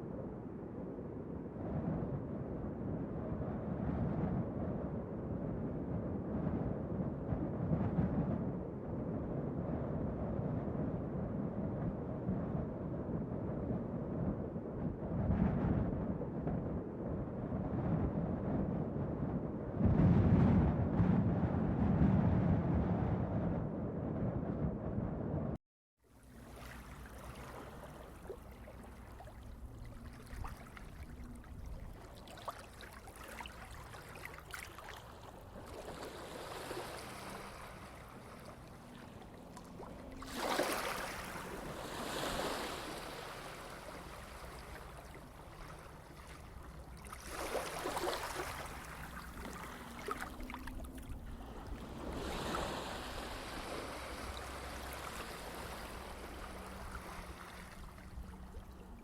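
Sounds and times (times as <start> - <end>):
water rushing: 26.4 - 59.0.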